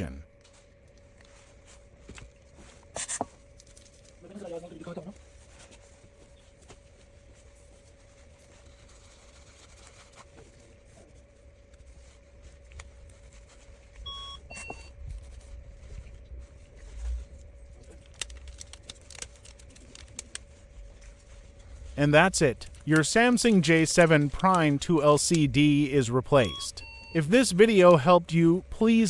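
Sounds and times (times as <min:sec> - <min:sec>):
faint steady hum: 0:00.0 - 0:29.0
two-tone electronic beep: 0:14.1 - 0:14.9, 0:24.0 - 0:28.9.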